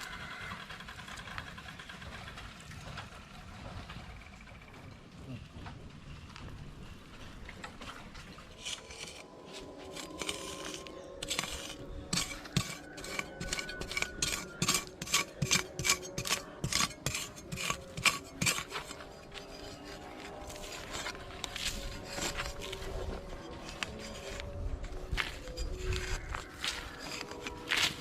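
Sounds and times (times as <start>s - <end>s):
metal utensil scraping a pot: 8.5s - 28.0s.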